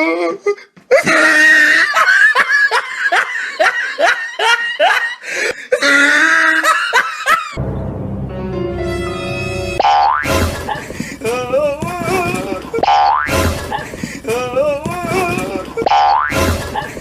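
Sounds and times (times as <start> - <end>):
person laughing hard: 0.9 - 7.6, 10.2 - 17.0
music: 7.6 - 12.7, 13.3 - 13.8.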